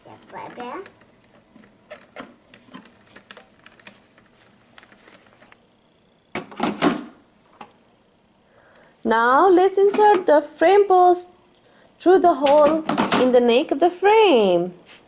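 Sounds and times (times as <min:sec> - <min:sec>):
rustling noise: 0:01.3 - 0:05.6, 0:14.8 - 0:15.0.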